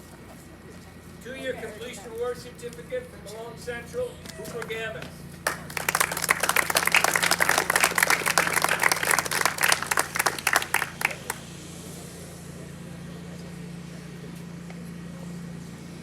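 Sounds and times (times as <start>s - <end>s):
steady low hum: 0.0s - 16.0s
audience clapping: 5.4s - 11.5s.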